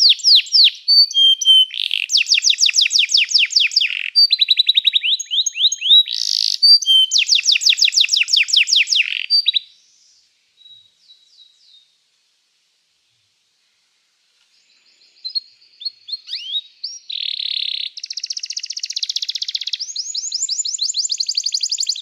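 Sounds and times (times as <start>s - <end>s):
canary singing trills: 0.0s - 9.8s, 14.7s - 22.0s
faint bird chirps: 0.0s - 12.1s, 13.6s - 22.0s.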